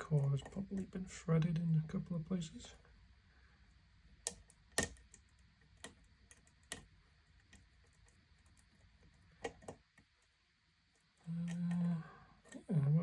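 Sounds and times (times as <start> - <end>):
lock pick clicking in lock: 4.3 - 5.2.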